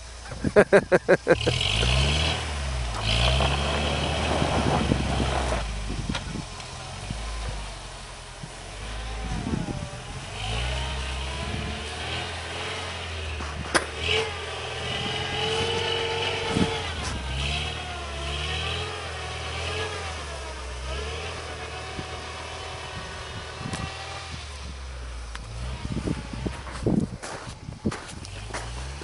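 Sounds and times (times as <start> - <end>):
car engine revving under load: 0.0 - 29.0.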